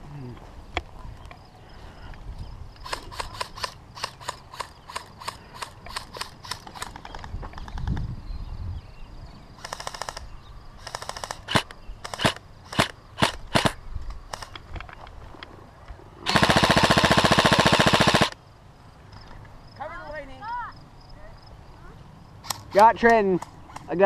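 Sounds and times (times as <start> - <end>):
airsoft guns firing: 2.8 - 7.0, 9.6 - 10.2, 10.8 - 14.5, 16.3 - 18.4.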